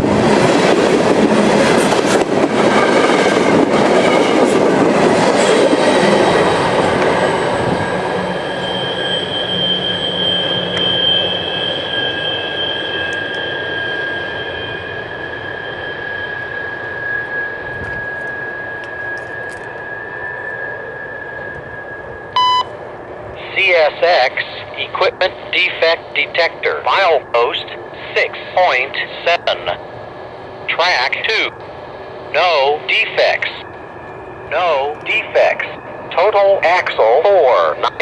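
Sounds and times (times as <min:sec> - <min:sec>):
freight train rolling: 0:00.0 - 0:38.0
train wheels squealing: 0:02.7 - 0:22.7.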